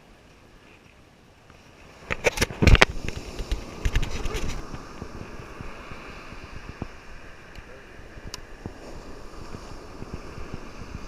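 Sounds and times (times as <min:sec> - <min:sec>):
surf hiss: 0:00.0 - 0:11.0
wind: 0:00.0 - 0:11.0
rough rustling: 0:00.6 - 0:07.5
sharp knocks and scraping: 0:02.0 - 0:04.8.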